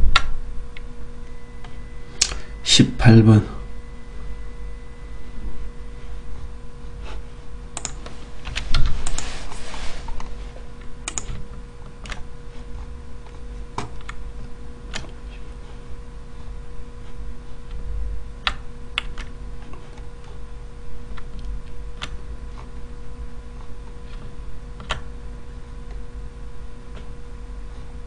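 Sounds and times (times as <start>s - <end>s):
steady low hum: 0.0s - 28.0s
keyboard keys clicking: 7.8s - 9.2s, 11.1s - 11.4s.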